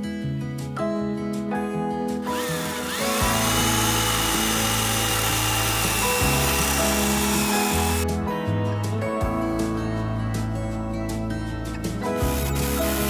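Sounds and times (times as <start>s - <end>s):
mini chainsaw motor whine: 2.2s - 8.0s, 12.2s - 13.0s.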